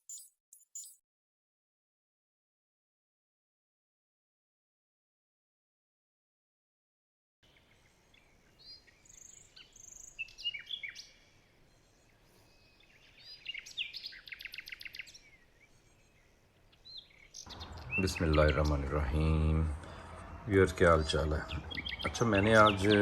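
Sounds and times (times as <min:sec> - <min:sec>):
songbirds chirping: 0:07.4 - 0:23.0
fast bird trill: 0:17.4 - 0:18.8, 0:20.9 - 0:23.0.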